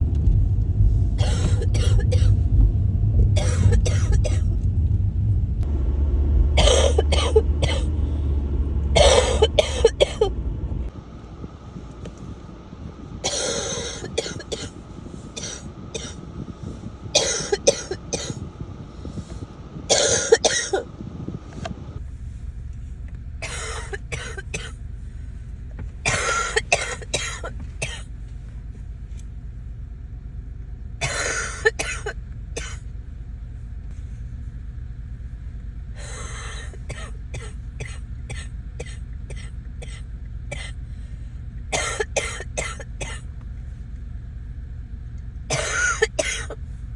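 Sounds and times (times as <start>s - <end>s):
person coughing: 1.2s - 2.3s, 3.4s - 4.5s, 6.6s - 7.9s, 9.0s - 10.3s, 13.2s - 14.8s, 17.2s - 18.4s, 19.9s - 20.8s, 23.4s - 24.8s, 26.1s - 28.0s, 31.0s - 32.8s, 41.7s - 43.2s, 45.5s - 46.6s.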